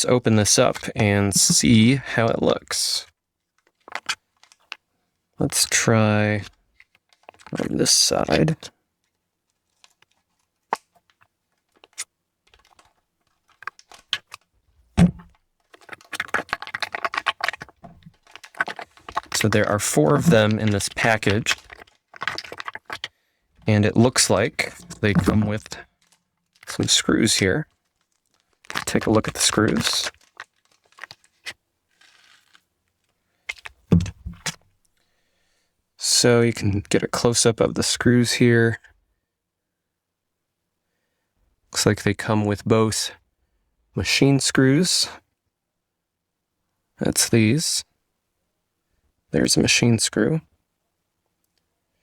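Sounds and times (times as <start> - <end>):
packaging crinkling: 3.6 - 4.8, 6.8 - 8.6, 9.6 - 32.6, 33.5 - 34.6
packaging clicks and taps: 9.8 - 27.4
heavy thump: 15.0 - 15.3
taps and knocks: 33.9 - 34.5.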